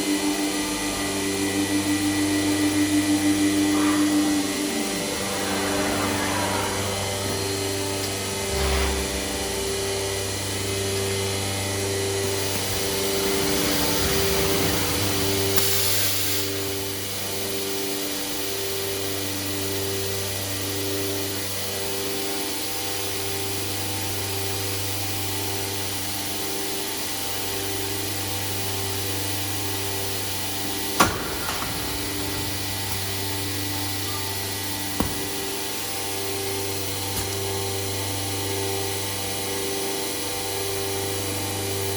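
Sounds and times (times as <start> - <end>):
machine drone with pulsing tone: 0.0 - 41.9
machine hiss: 1.0 - 11.6, 12.2 - 18.7, 28.4 - 37.8.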